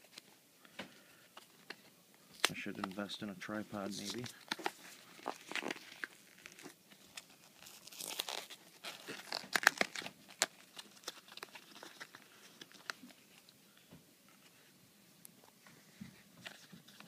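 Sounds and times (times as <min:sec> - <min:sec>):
packaging crinkling and tearing: 0:01.4 - 0:13.5.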